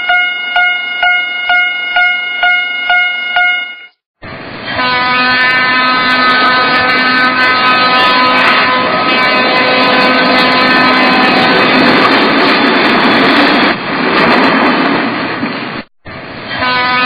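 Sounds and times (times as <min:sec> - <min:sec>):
railroad crossing bell ringing: 0:00.0 - 0:04.0
train running with hum and whine: 0:00.0 - 0:17.0.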